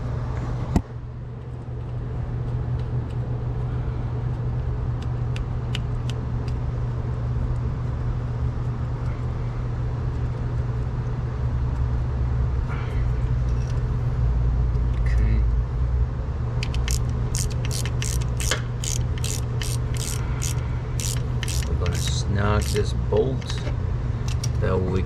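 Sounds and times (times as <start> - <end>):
low machine hum: 0.0 - 25.0.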